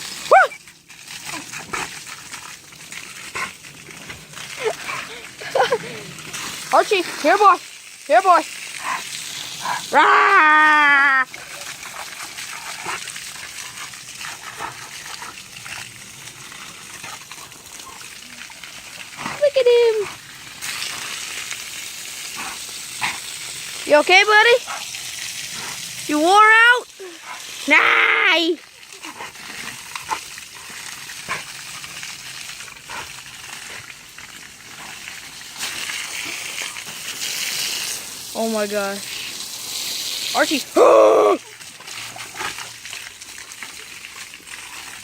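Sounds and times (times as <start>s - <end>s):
water splattering: 0.0s - 45.0s
water spraying: 0.0s - 45.0s.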